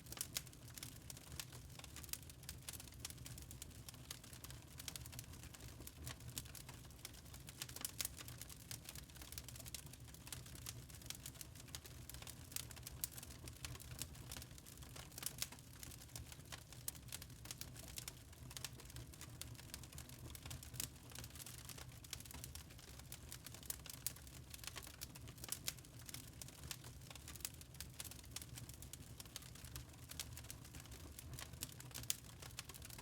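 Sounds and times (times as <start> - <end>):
wood fire crackling: 0.0 - 33.0.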